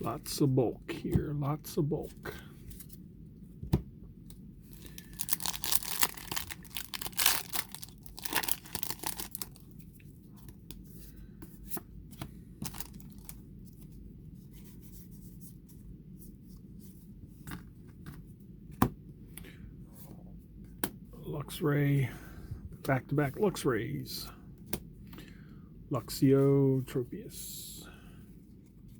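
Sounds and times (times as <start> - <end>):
foil wrapper tearing and crinkling: 4.8 - 9.6, 12.6 - 13.3.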